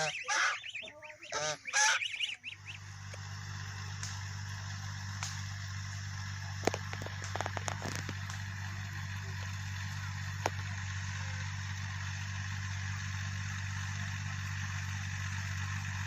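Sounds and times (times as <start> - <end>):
poultry calling: 0.0 - 3.0
steady low hum with hiss: 0.0 - 16.0.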